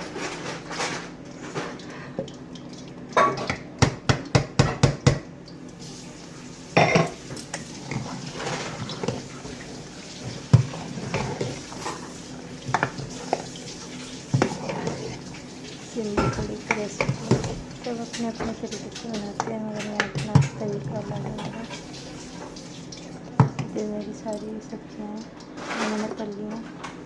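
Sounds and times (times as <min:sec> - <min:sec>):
metal utensils knocking on a pot: 0:16.1 - 0:17.6.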